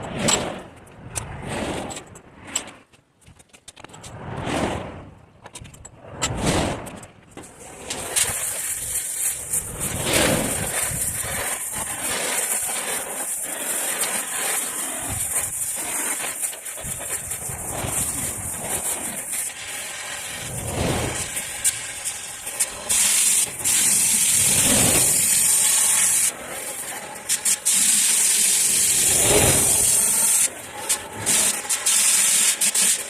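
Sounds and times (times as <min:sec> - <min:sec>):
cutting torch hissing: 0:07.5 - 0:33.0.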